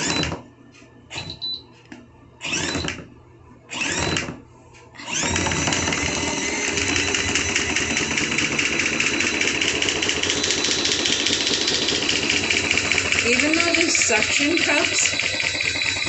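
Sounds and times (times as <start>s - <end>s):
washing machine whirring and rattling: 0.0s - 16.0s.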